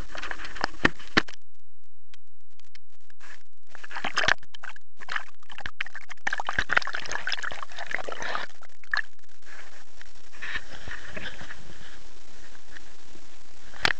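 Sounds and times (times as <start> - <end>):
water splashing and trickling: 3.8 - 9.0
water drips: 3.9 - 9.0.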